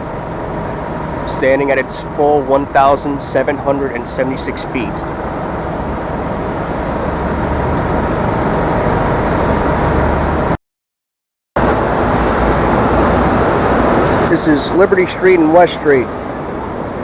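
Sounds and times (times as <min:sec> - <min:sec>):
city street traffic: 0:00.0 - 0:10.6, 0:11.6 - 0:17.0.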